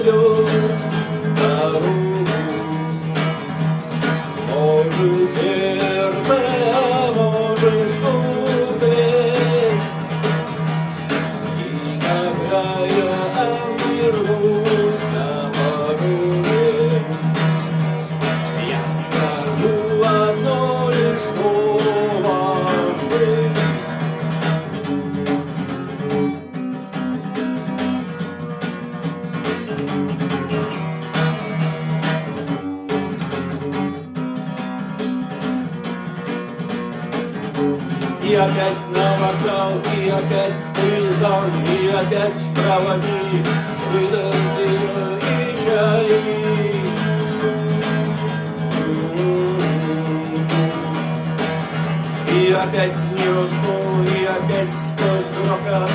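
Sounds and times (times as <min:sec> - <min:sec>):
person singing: 0:00.0 - 0:03.5, 0:04.2 - 0:24.3, 0:37.8 - 0:55.9
acoustic guitar strumming: 0:00.0 - 0:55.9
instrumental music with steady beat: 0:00.0 - 0:55.9.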